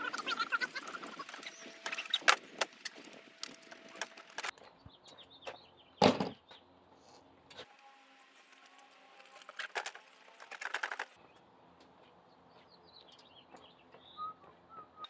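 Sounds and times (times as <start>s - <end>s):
tools clicking and knocking: 9.4s - 11.1s.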